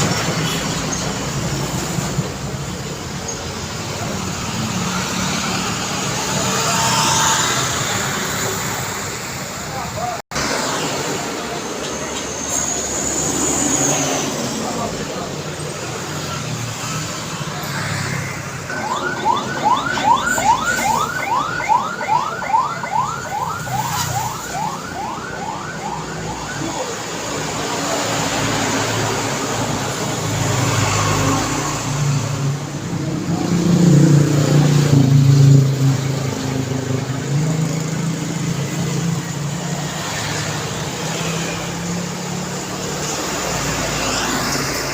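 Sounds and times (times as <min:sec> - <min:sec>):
heavy vehicle engine: 0:00.0 - 0:44.9
road traffic passing: 0:00.0 - 0:44.9
electronic warbling alarm: 0:18.6 - 0:27.2.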